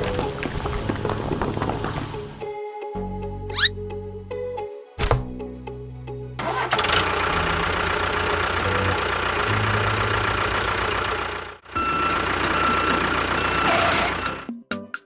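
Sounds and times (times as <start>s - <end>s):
vehicle engine rattling: 0.0s - 2.5s, 6.4s - 14.5s.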